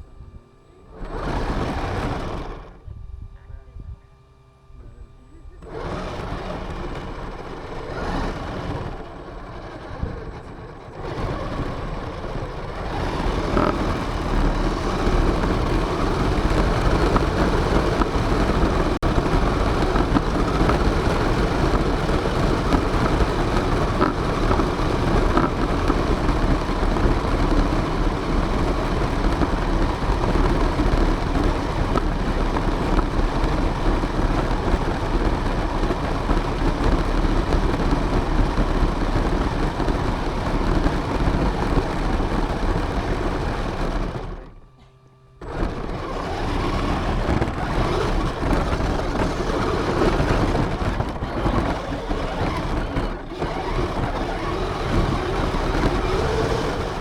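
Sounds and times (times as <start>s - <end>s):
radio-controlled car rumbling: 0.0s - 57.0s.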